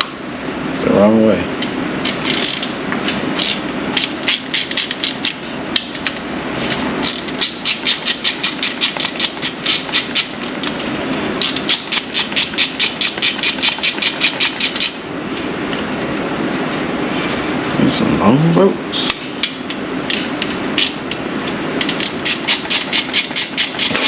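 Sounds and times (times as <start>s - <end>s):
hand ratchet clicking: 7.0s - 10.3s, 11.4s - 15.0s, 21.8s - 24.0s.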